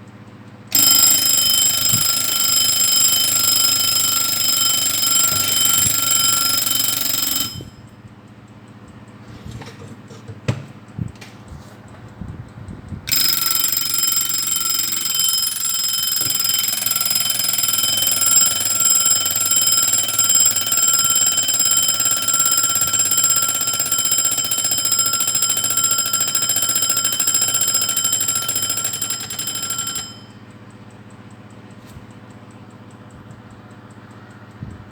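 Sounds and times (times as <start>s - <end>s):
alarm clock bell ringing: 0.7s - 7.9s, 13.1s - 30.6s.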